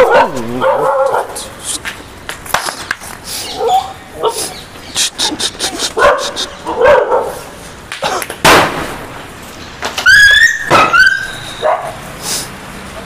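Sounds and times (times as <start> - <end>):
dogs barking: 0.0 - 1.6, 3.4 - 8.2, 10.1 - 12.1.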